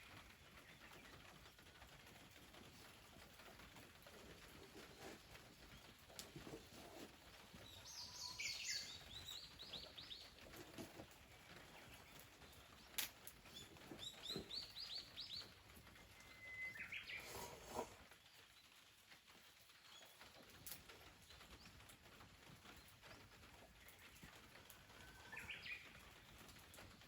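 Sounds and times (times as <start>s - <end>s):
songbird singing: 4.6s - 18.8s, 25.0s - 27.0s.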